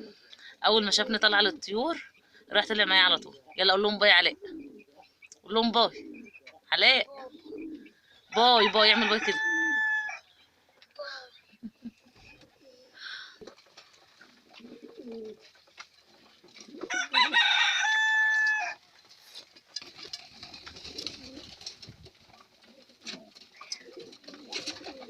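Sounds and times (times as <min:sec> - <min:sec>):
pigeons cooing: 0:00.0 - 0:10.3, 0:11.0 - 0:25.0
rooster crowing: 0:08.3 - 0:10.3, 0:16.9 - 0:18.8.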